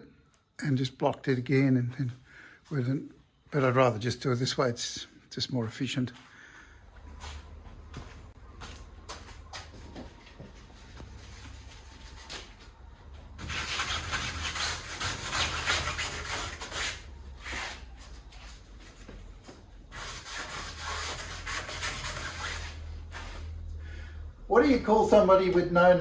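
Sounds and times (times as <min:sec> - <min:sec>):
sandpaper rasping: 0:13.4 - 0:18.5, 0:19.9 - 0:23.6.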